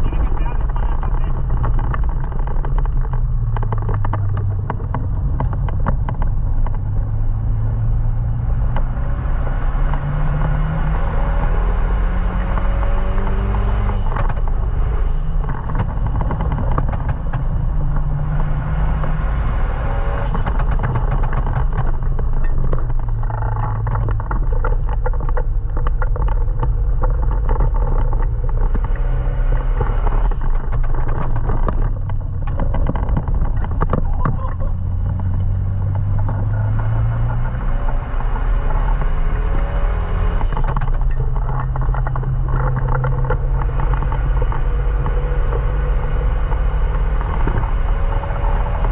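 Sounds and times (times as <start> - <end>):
car engine revving hard: 7.2 - 14.1, 18.0 - 21.7, 34.6 - 40.8, 41.9 - 48.9.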